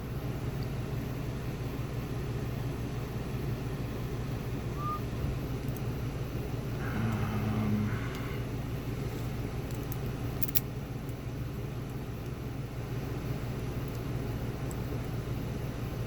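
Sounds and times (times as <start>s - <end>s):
low background rumble: 0.0s - 16.0s
short hum: 4.7s - 5.3s, 6.7s - 8.8s
padlock metallic clicks: 9.7s - 11.2s.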